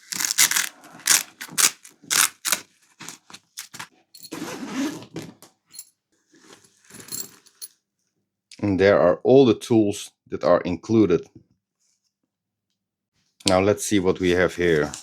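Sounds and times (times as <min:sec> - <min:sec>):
fabric bag rustling: 0:00.0 - 0:03.9.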